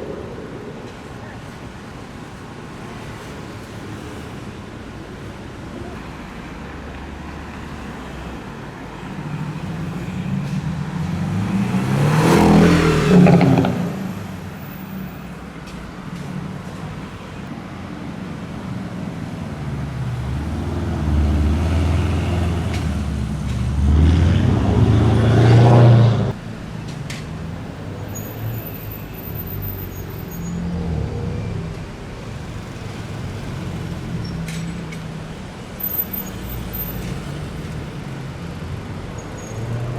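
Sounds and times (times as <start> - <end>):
steady traffic rumble: 0.0 - 39.9
sports cars accelerating past: 9.4 - 14.8, 19.9 - 26.4.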